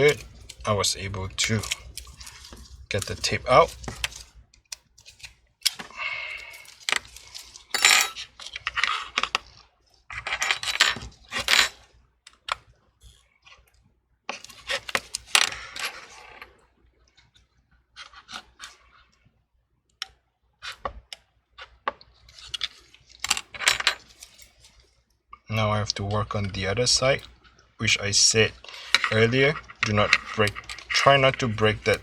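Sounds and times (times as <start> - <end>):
metal tools clicking and scraping: 6.5 - 8.6.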